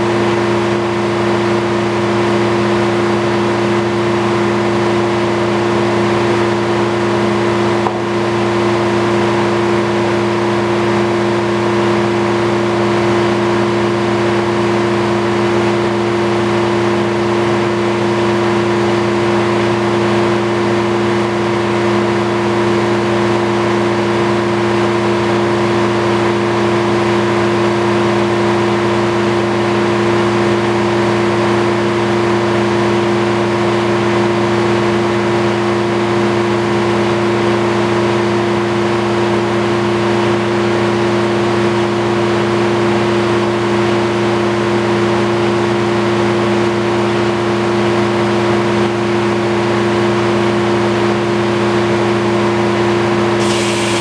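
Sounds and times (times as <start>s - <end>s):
sawmill blade humming: 53.4s - 54.0s.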